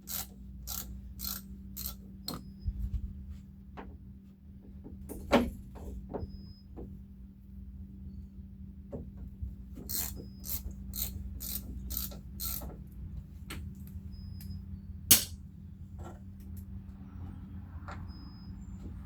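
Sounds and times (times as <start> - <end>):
hand ratchet clicking: 0.1 - 2.0, 9.9 - 12.6
sharp loud click: 15.1 - 15.4.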